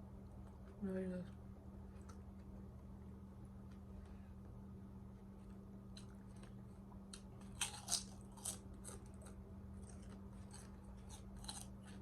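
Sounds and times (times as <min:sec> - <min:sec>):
crunchy chewing of sandwich: 0:05.1 - 0:12.0.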